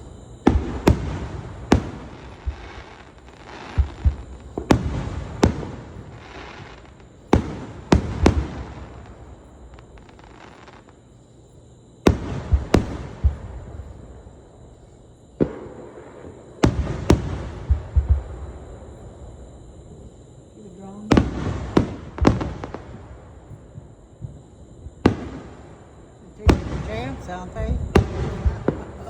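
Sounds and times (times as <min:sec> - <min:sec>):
fireworks bangs: 0:00.0 - 0:11.0, 0:12.0 - 0:19.6, 0:20.8 - 0:29.0
fireworks crackling: 0:00.0 - 0:11.1, 0:12.1 - 0:19.2, 0:20.8 - 0:29.0
low booms: 0:26.4 - 0:29.0.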